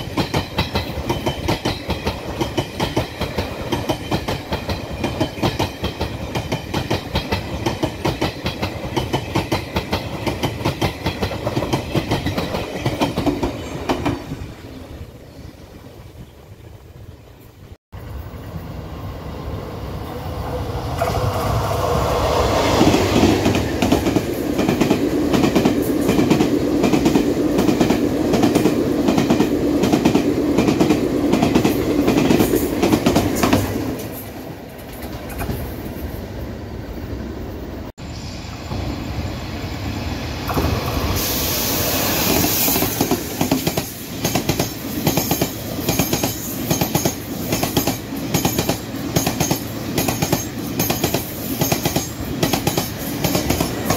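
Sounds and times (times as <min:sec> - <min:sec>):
train wheels clacking over rail joints: 0:00.0 - 0:14.2, 0:42.4 - 0:53.9
high hiss: 0:38.0 - 0:46.7.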